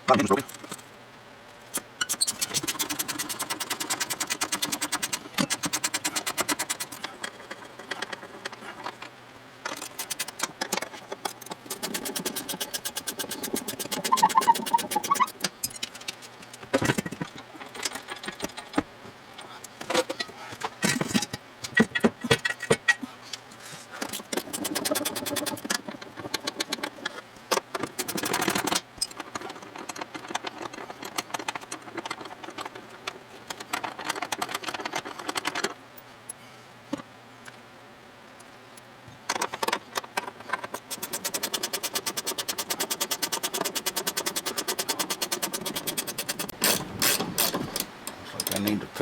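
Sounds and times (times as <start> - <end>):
ratchet clicking: 40.8 - 48.7.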